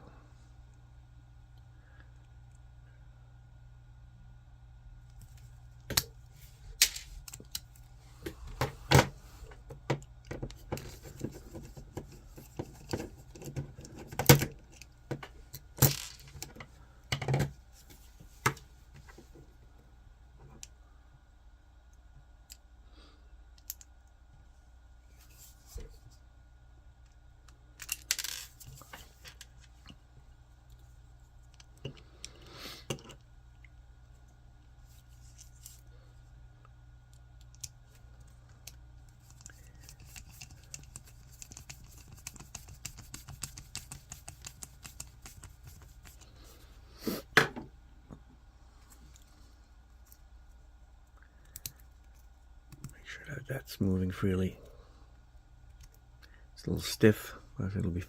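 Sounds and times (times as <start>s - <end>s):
faint steady hum: 0.0s - 58.0s
tools and parts clicking and rattling: 9.9s - 17.5s, 27.8s - 30.0s.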